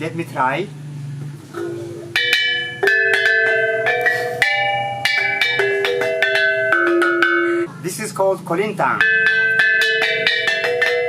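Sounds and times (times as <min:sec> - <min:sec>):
small gongs struck with beaters: 0:01.5 - 0:07.8, 0:08.9 - 0:11.0.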